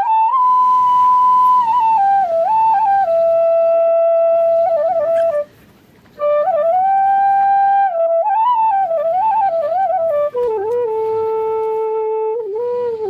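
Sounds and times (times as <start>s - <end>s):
solo flute melody: 0.0s - 13.0s.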